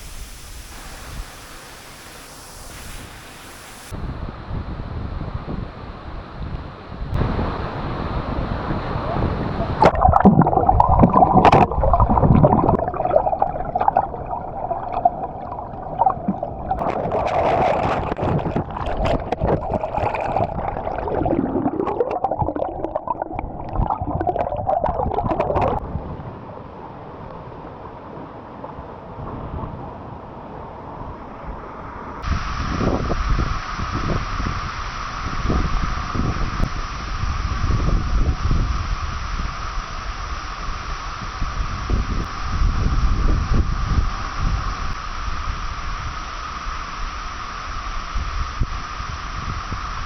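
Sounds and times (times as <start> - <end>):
waterfall rushing and gurgling: 0.0 - 4.0
water splashes and sloshes: 9.0 - 25.8.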